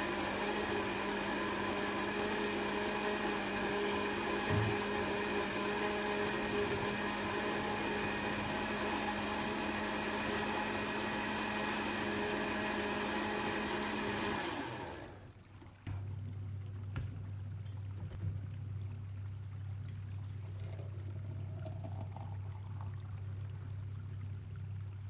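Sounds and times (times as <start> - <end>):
appliance motor humming: 0.0 - 15.3.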